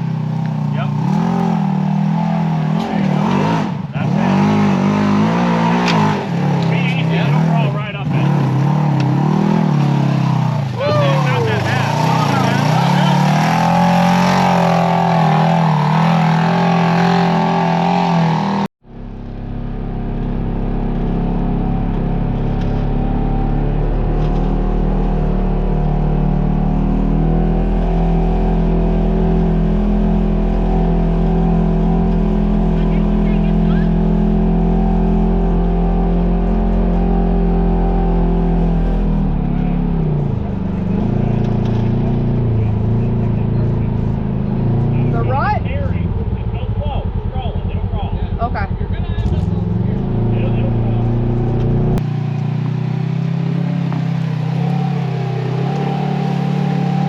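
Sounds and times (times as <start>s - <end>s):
engine revving under load: 0.0s - 57.0s
dull steady low sound: 18.7s - 54.6s.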